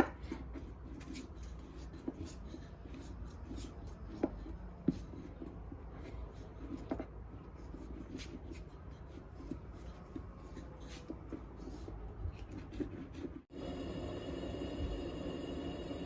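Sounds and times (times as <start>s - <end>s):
hands rubbing and patting dough: 0.0s - 13.5s
steady hum: 13.5s - 16.0s.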